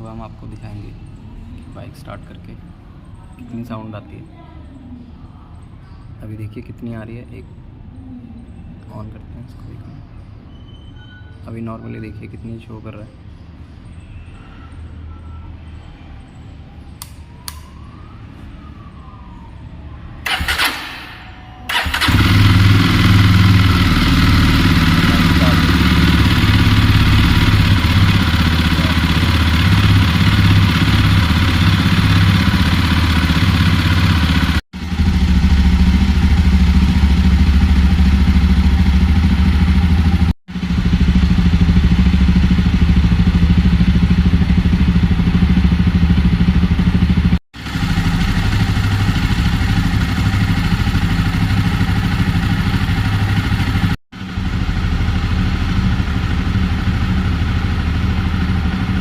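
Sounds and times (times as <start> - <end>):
motorcycle engine idling: 20.2 - 59.0.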